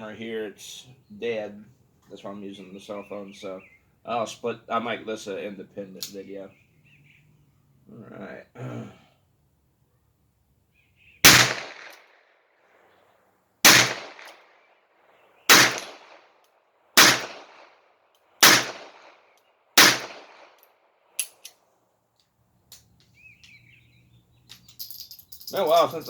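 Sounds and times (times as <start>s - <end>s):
revolver shots echoing: 15.5s - 16.2s, 17.0s - 17.6s.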